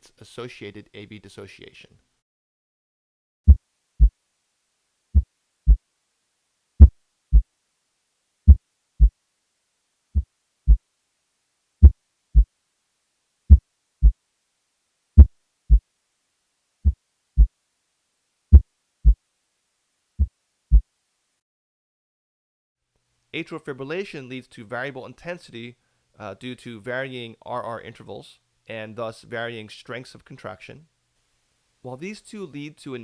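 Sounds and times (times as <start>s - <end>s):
heartbeat thumps: 3.5s - 4.2s, 5.2s - 5.8s, 6.8s - 7.5s, 8.5s - 9.2s, 10.2s - 10.8s, 11.8s - 12.5s, 13.5s - 14.2s, 15.2s - 15.8s, 16.8s - 17.5s, 18.5s - 19.2s, 20.2s - 20.9s.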